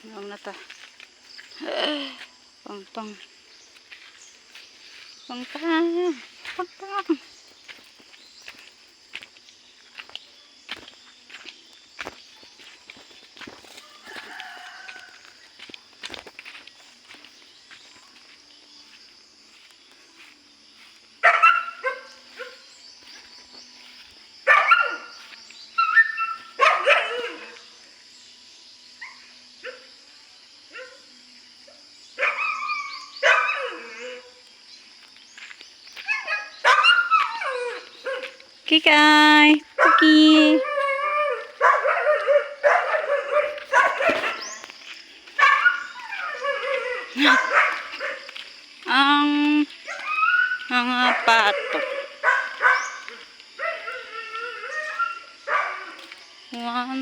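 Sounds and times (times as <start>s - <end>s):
dog barking: 21.2s - 22.7s, 24.4s - 27.7s, 30.7s - 31.1s, 32.2s - 34.4s, 36.1s - 38.4s, 39.8s - 44.6s, 45.4s - 48.4s, 49.8s - 56.1s.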